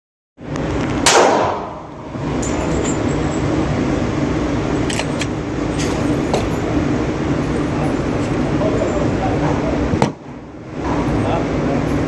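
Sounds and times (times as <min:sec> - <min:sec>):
pistol shot: 0:01.0 - 0:01.9.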